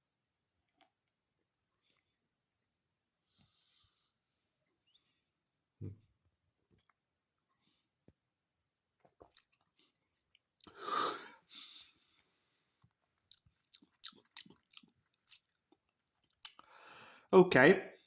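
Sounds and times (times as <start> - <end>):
breathy tasting sound: 10.6 - 11.9
mouth clicks and lip smacks: 13.2 - 16.7.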